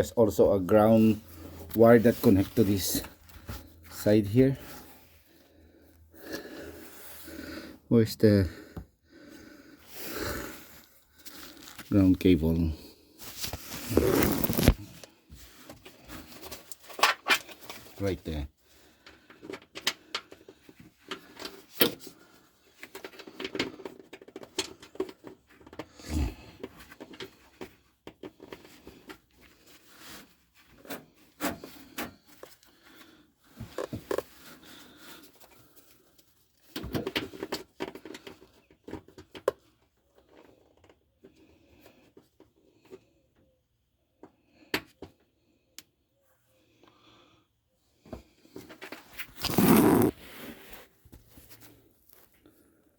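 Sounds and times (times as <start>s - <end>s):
handling noise: 49.2s - 50.2s.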